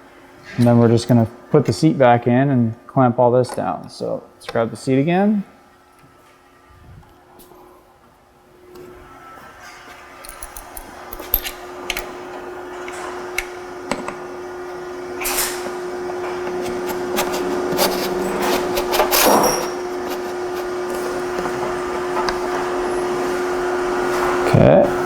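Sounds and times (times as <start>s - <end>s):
metal parts clicking and scraping: 10.2s - 12.2s
steady hum: 10.2s - 25.0s.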